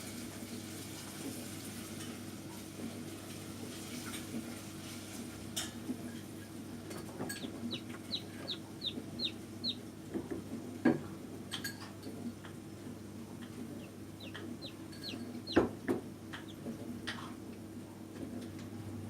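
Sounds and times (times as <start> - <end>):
steady low hum: 5.9 - 18.1
chicks peeping: 6.9 - 10.5, 13.2 - 17.0.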